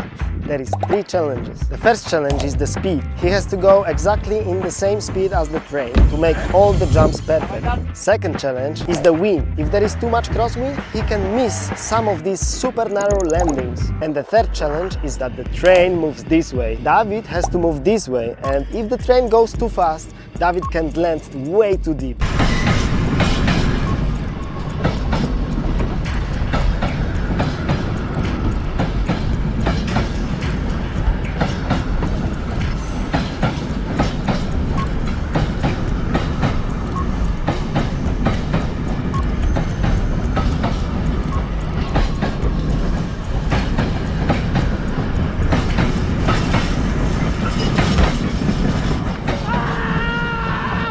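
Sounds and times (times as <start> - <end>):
train rumbling: 1.4 - 8.2, 8.8 - 12.8, 13.6 - 50.9
wheels clicking over rails: 22.2 - 50.9.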